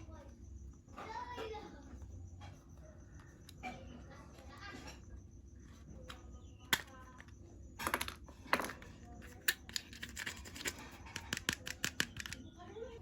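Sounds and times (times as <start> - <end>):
hard plastic clicks and taps: 9.5 - 12.5.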